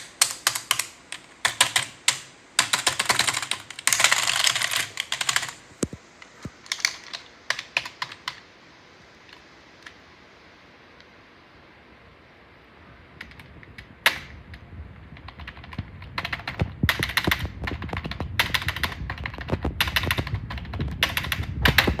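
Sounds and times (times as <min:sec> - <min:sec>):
typing on computer keyboard: 0:00.0 - 0:06.0, 0:06.6 - 0:08.4, 0:15.2 - 0:22.0.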